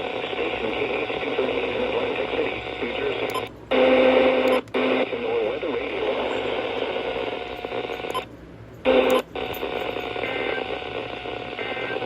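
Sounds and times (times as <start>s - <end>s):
radio static hissing: 0.0s - 8.2s, 8.9s - 12.0s.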